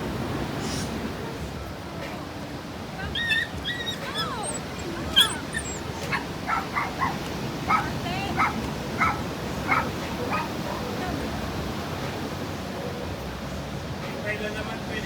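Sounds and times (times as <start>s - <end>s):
animal yelping and whining: 3.1s - 10.6s.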